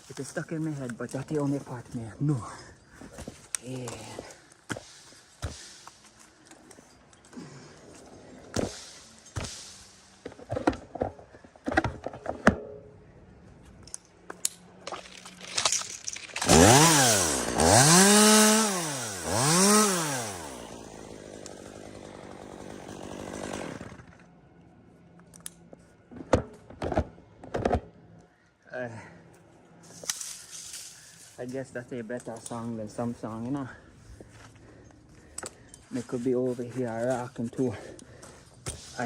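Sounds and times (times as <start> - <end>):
chainsaw revving: 16.4 - 24.2.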